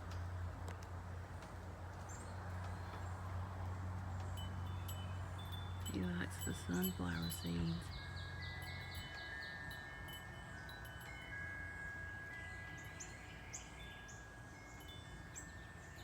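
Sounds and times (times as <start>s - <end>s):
wind chimes ringing: 4.3s - 16.0s.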